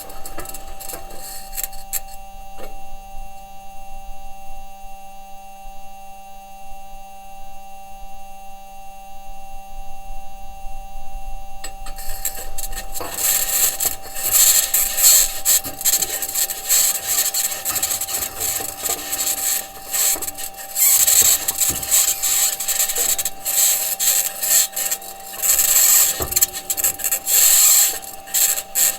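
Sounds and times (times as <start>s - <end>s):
high-pitched scratching and grinding: 0.0s - 2.2s, 11.7s - 28.9s
electrical hum: 0.0s - 28.9s.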